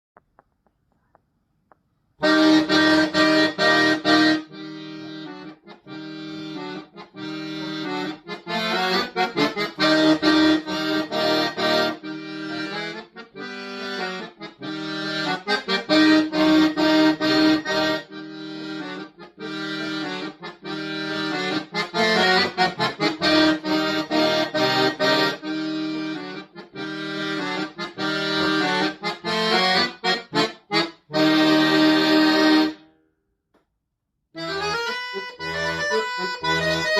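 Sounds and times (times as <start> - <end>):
solo accordion playing: 2.2 - 32.9, 34.4 - 36.9.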